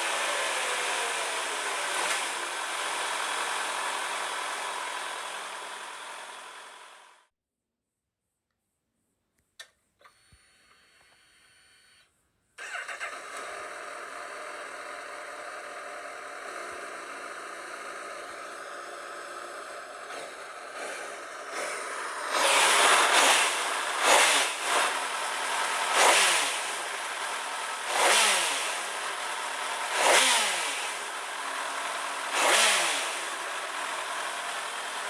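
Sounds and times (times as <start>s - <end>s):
motorcycle engine starting and idling: 0.0s - 7.2s, 12.6s - 35.0s
clicks: 9.4s - 11.3s
faint steady whir: 9.6s - 12.1s.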